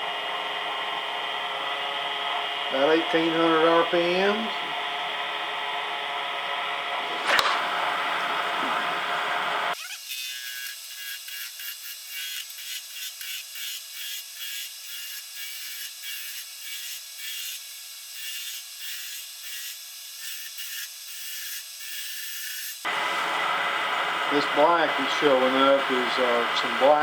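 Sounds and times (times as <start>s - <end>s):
lathe tool scraping wood: 7.0s - 10.3s, 22.9s - 27.0s.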